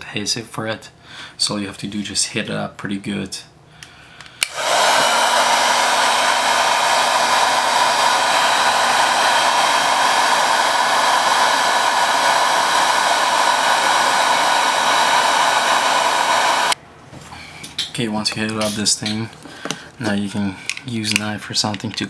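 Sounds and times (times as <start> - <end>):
heat gun blowing: 4.3 - 16.8.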